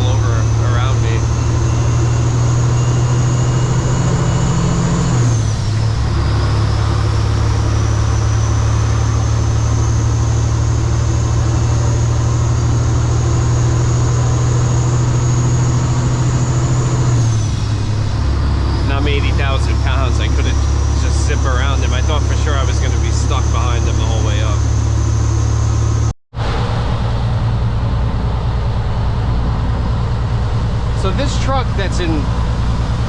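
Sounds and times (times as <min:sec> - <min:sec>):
high whine: 0:00.0 - 0:33.0
truck diesel engine under load: 0:00.0 - 0:33.0.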